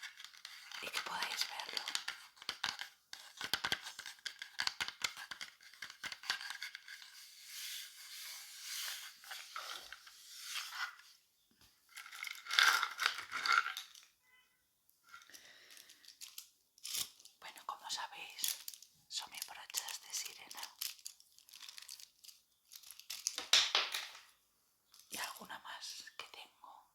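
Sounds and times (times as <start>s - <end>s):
soft brush strokes: 7.0s - 11.1s.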